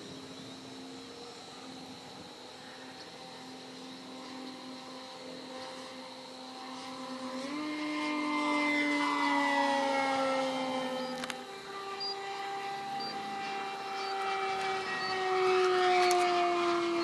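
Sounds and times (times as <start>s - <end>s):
model plane motor whining: 0.0s - 17.0s.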